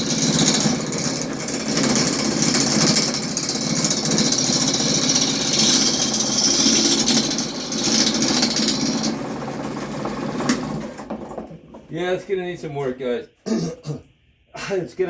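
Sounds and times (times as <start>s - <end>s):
lathe motor hum: 0.0s - 11.8s
tool scraping spinning wood: 0.0s - 11.9s.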